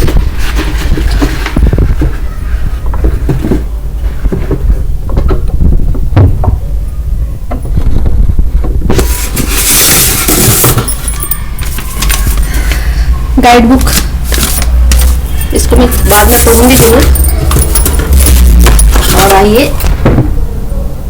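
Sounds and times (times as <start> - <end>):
packaging rustling: 0.0 - 2.2, 8.9 - 20.0
steady low hum: 0.0 - 21.0.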